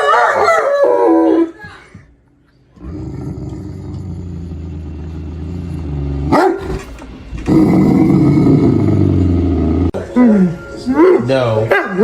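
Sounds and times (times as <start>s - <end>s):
dog growling: 2.8s - 10.6s
dog barking: 6.3s - 6.8s, 11.7s - 12.0s.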